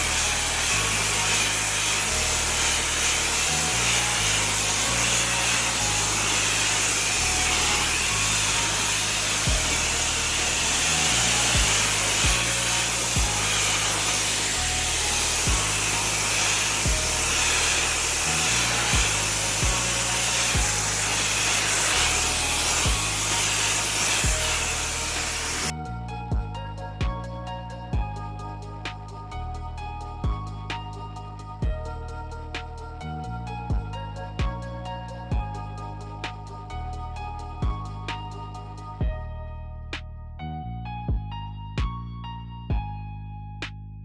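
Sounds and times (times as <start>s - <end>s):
pressure washer spray hissing: 0.0s - 25.7s
background music with beat: 0.0s - 44.0s.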